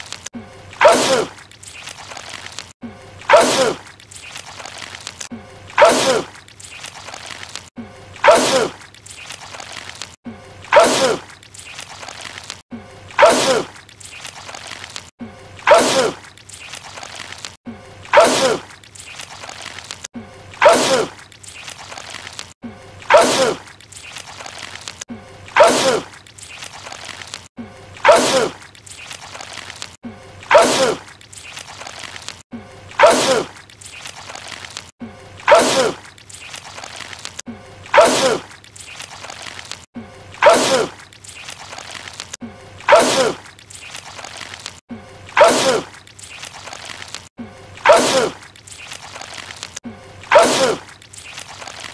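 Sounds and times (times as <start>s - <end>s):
man sneezing: 45.4s - 45.9s, 47.8s - 48.4s.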